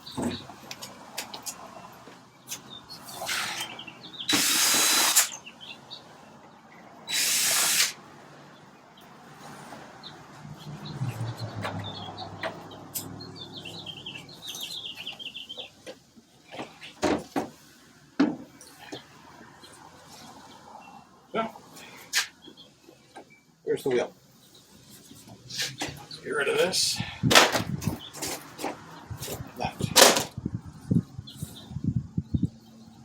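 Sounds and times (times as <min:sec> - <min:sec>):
cordless drill running: 0:04.3 - 0:05.3, 0:07.1 - 0:08.0.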